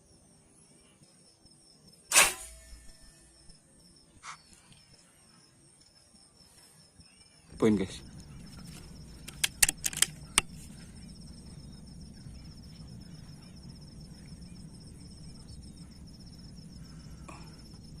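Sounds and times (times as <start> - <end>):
high insect drone: 0.0 - 18.0
sharp clicks: 8.8 - 10.6
low rumble: 10.5 - 18.0.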